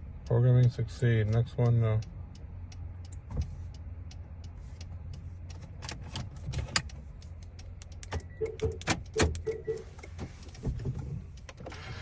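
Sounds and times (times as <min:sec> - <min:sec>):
car keys clicking and rattling: 0:05.0 - 0:12.0
pulsed electronic beep: 0:09.4 - 0:09.9.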